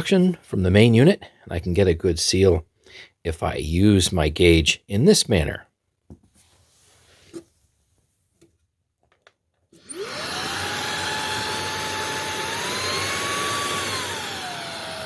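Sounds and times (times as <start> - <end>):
vacuum motor whining: 9.8 - 15.0.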